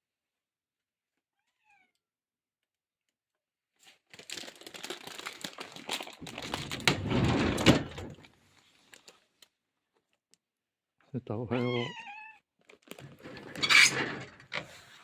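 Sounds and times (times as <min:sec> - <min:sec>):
cat meowing faintly: 0:01.3 - 0:02.0, 0:11.5 - 0:12.4.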